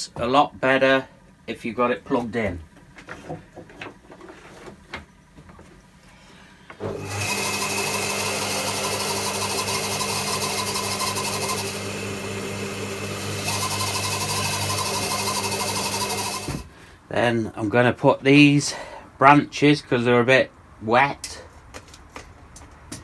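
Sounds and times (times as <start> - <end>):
bandsaw motor humming: 6.8 - 16.7.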